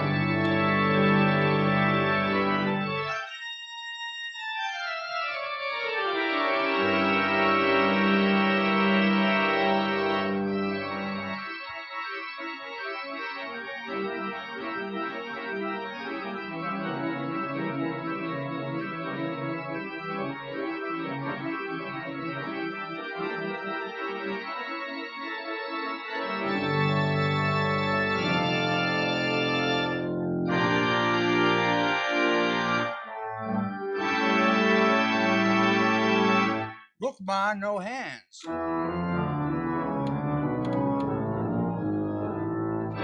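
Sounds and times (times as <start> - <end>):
pipe organ playing chords: 0.0 - 3.6, 5.9 - 12.0, 26.0 - 36.7, 38.6 - 43.0.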